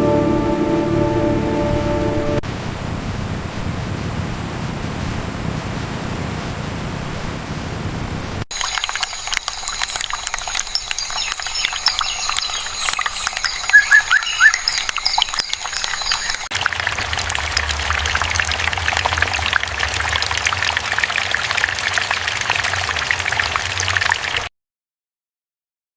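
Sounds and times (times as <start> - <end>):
low hum: 0.0 - 2.4
small birds chirping: 8.6 - 16.5.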